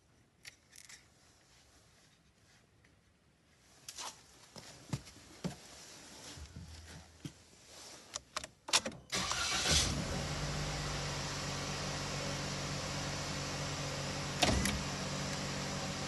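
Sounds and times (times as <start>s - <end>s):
car engine starting and idling: 9.1s - 16.0s.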